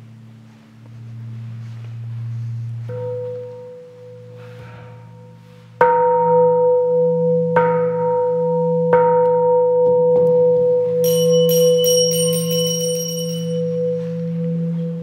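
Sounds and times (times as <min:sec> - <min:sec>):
low hum: 0:00.0 - 0:15.0
temple bell ringing: 0:02.8 - 0:15.0
small bell ringing rapidly: 0:11.0 - 0:13.8.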